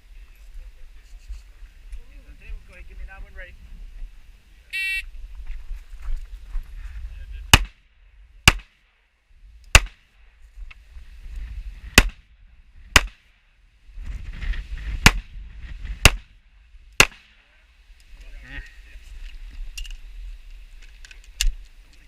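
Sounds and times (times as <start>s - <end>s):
rough movement noise: 5.2s - 7.2s, 13.9s - 16.0s
pistol shots: 7.6s - 7.8s, 8.5s - 8.8s, 9.8s - 10.0s, 13.0s - 13.2s, 17.0s - 17.4s.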